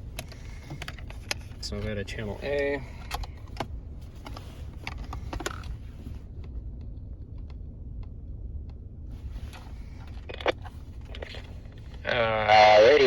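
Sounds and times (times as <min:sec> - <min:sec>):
low steady rumble: 0:00.0 - 0:13.0.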